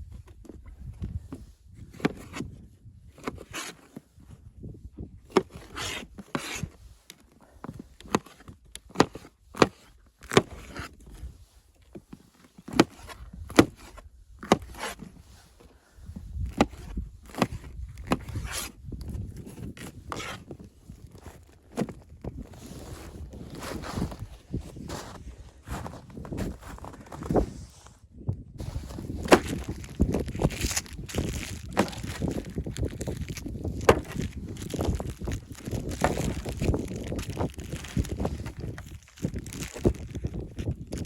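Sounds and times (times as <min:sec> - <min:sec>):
scraping and rubbing: 0:28.6 - 0:41.0.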